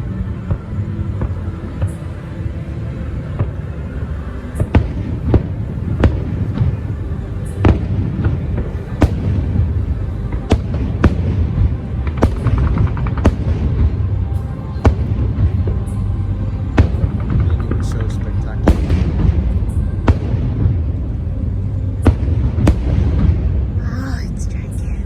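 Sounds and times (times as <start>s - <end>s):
music soundtrack: 0.0s - 25.0s
fireworks bangs: 16.8s - 19.5s.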